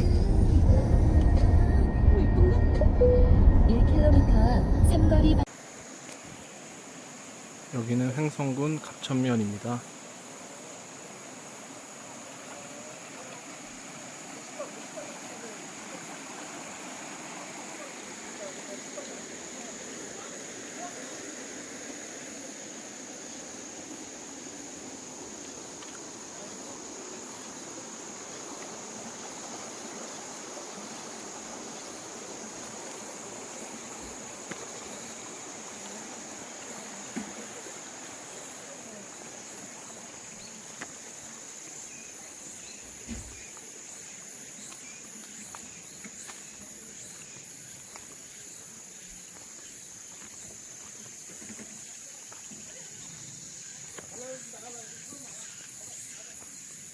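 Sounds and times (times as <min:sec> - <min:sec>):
low rumble: 0:00.0 - 0:05.5
insects chirring: 0:00.0 - 0:56.9.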